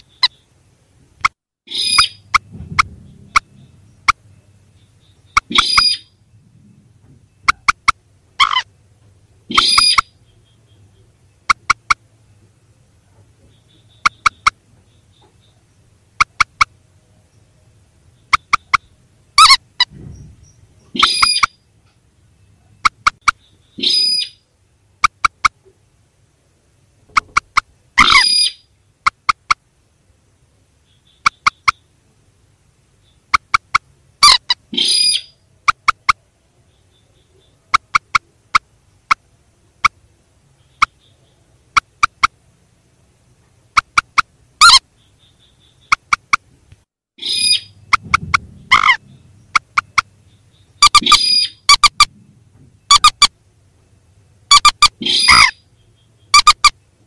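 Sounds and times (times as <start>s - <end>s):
harsh bird call: 1.7s - 6.2s, 18.2s - 21.6s, 22.6s - 24.5s, 27.1s - 29.5s, 47.2s - 53.3s, 54.5s - 56.8s
quick clicking bird notes: 45.9s - 46.5s.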